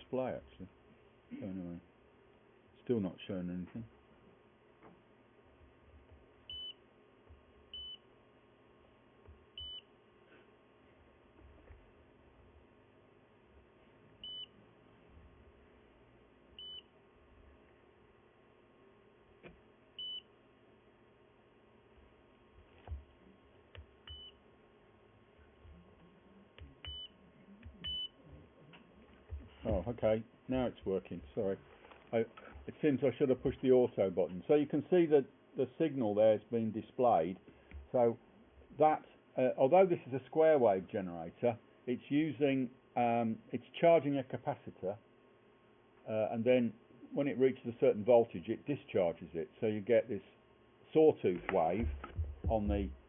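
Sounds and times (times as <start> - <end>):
high-pitched key beeps: 26.8 - 28.2
handling knocks: 51.4 - 53.0.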